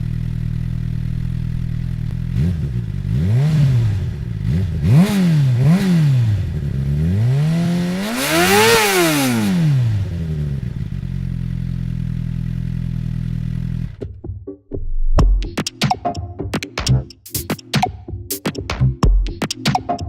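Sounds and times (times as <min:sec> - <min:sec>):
motorcycle engine idling: 0:00.0 - 0:14.0
motorcycle engine revving: 0:00.0 - 0:14.0.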